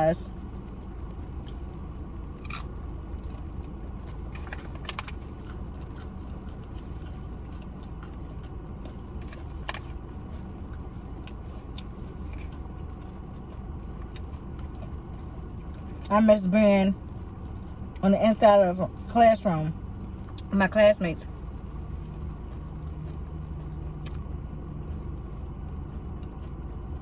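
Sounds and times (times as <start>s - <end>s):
low background hum: 0.0s - 27.0s
chewing and crunching: 0.1s - 27.0s.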